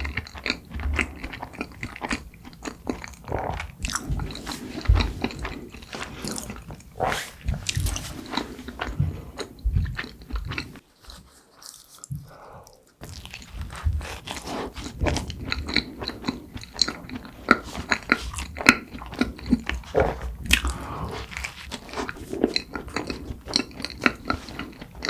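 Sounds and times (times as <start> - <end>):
biting and chewing buns: 0.0 - 25.0.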